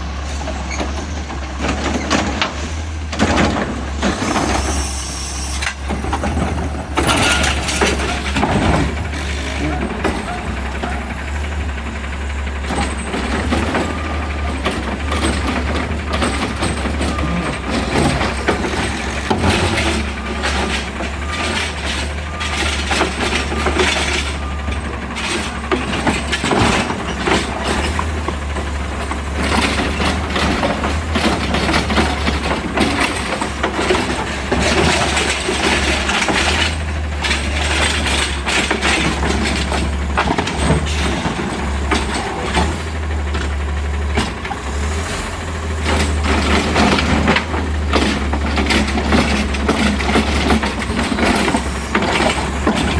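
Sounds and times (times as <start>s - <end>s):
clattering and knocks: 5.8s - 11.8s, 12.6s - 44.6s, 45.8s - 52.9s
garbage truck engine idling: 5.8s - 52.9s.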